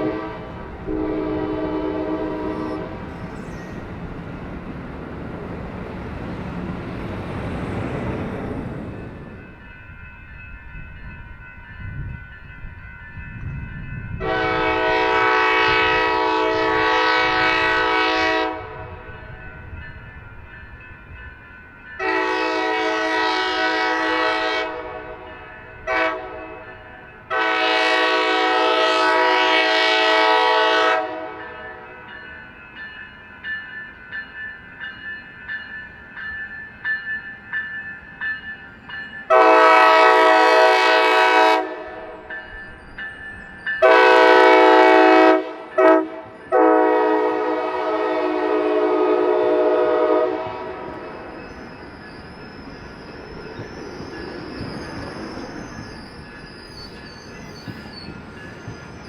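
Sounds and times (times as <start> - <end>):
locomotive air horn blasts: 0.0 - 3.0, 14.2 - 19.0, 22.0 - 26.6, 27.3 - 31.6, 39.3 - 42.1, 43.8 - 51.0.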